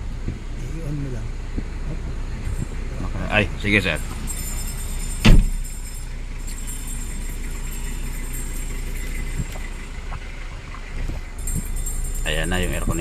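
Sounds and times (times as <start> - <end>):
car engine idling: 0.0 - 13.0
thump: 5.2 - 5.6.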